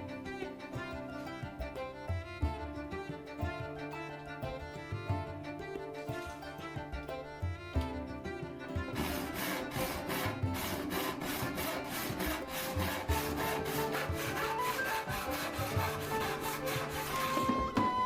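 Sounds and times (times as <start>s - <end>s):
background music: 0.0s - 18.0s
hand saw cutting wood: 8.8s - 18.0s.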